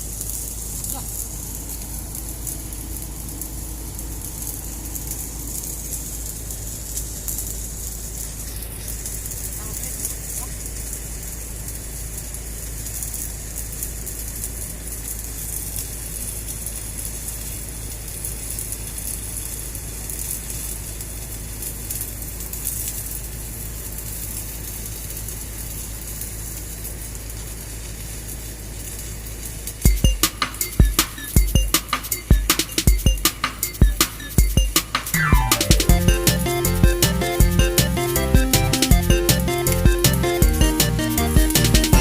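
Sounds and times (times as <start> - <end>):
low electrical hum: 0.0 - 14.1
welding arc crackling: 0.0 - 42.0.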